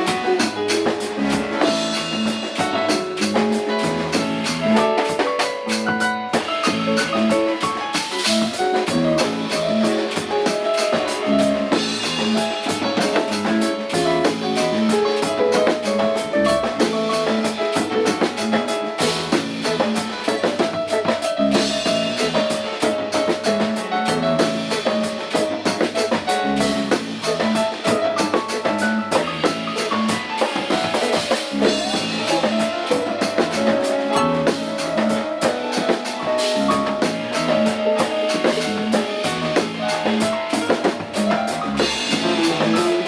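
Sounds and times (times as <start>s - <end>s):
drum kit: 0.0s - 43.0s
guitar melody: 0.0s - 43.0s
keyboard: 0.0s - 43.0s
electric bass: 1.1s - 2.6s, 3.2s - 4.8s, 8.9s - 10.0s, 11.3s - 12.6s, 13.3s - 15.0s, 15.9s - 17.5s, 18.4s - 20.0s, 21.4s - 22.5s, 26.4s - 27.6s, 28.9s - 30.1s, 31.6s - 32.8s, 33.4s - 35.2s, 36.5s - 37.7s, 38.6s - 40.2s, 41.2s - 43.0s.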